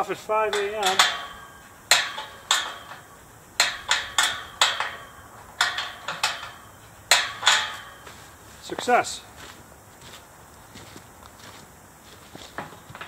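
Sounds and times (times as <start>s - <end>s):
hammer striking metal: 0.0s - 8.4s.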